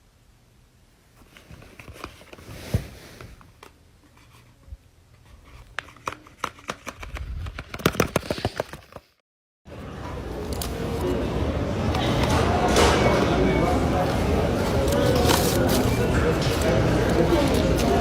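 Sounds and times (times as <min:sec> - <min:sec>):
paper crinkling and rustling: 0:14.0 - 0:18.0.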